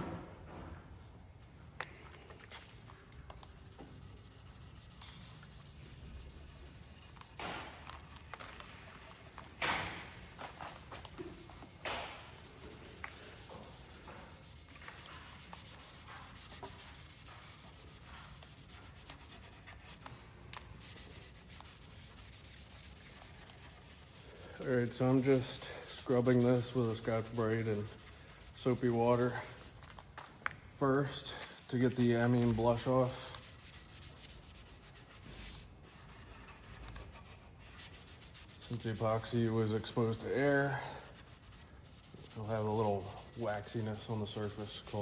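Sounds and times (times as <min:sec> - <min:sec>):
scouring pad scrubbing: 0:20.9 - 0:29.6, 0:37.9 - 0:45.0.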